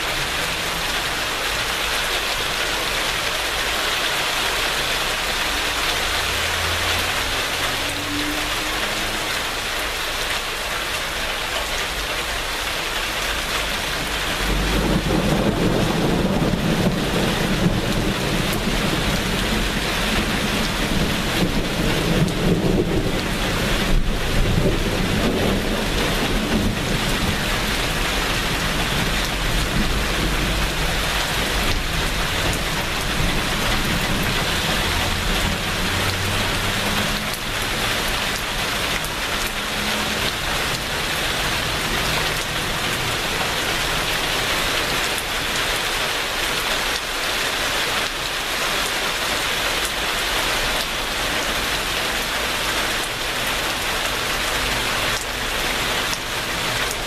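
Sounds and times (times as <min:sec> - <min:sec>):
heavy rain falling: 0:00.0 - 0:57.0
low rumble of thunder: 0:14.3 - 0:36.3.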